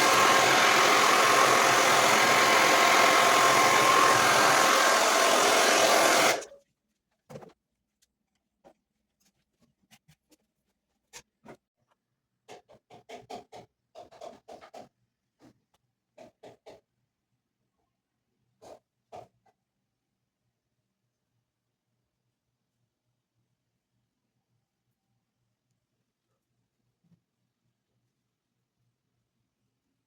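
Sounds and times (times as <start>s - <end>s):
hair dryer running with faint whine: 0.0s - 6.6s.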